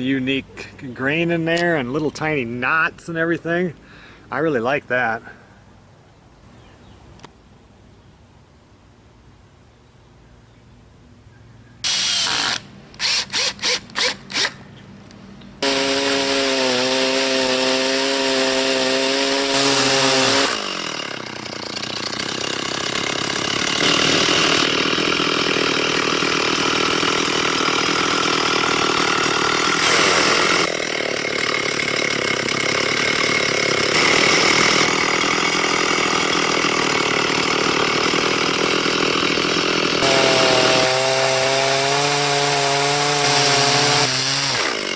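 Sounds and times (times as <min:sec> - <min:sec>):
chainsaw cutting through log: 0:11.8 - 0:14.6, 0:15.6 - 0:44.9
chainsaw engine: 0:11.8 - 0:14.6, 0:15.6 - 0:44.9.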